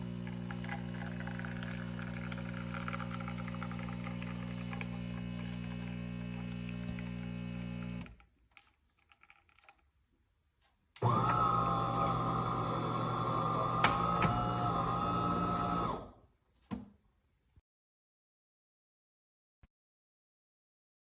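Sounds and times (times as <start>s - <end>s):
motor whine: 0.0s - 8.1s, 11.0s - 16.2s
coffee machine pump hum: 0.0s - 8.2s, 11.0s - 16.2s.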